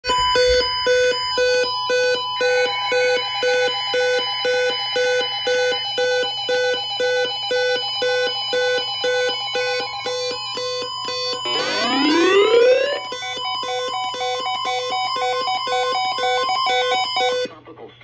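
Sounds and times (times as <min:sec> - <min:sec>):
steady high tones: 0:00.0 - 0:17.5
repeating beep: 0:00.1 - 0:17.5
buzzy warbling band: 0:09.2 - 0:17.5.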